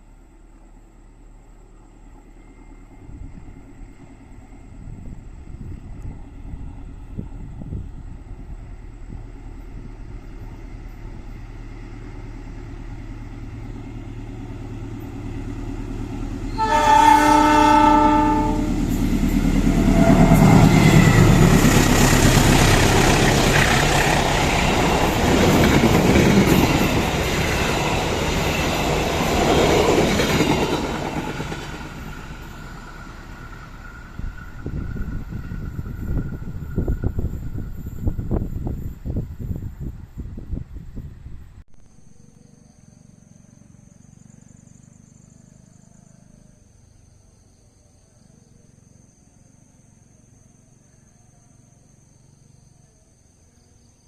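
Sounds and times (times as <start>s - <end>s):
train engine drone: 0.0s - 54.0s
train horn blast: 16.5s - 18.9s, 19.6s - 21.6s.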